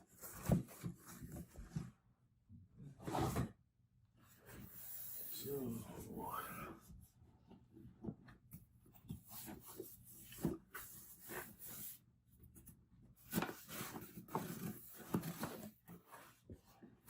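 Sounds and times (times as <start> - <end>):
cardboard rubbing and scraping: 13.2 - 16.6.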